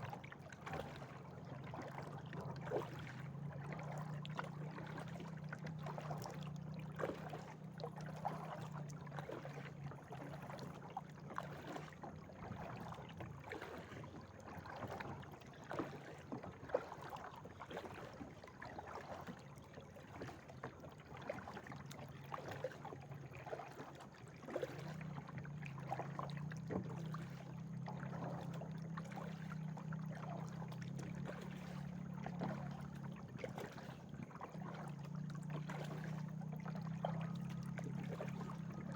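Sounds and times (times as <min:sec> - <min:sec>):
kayak paddle splashing: 0:00.0 - 0:38.9
water dripping from paddle: 0:00.0 - 0:38.9.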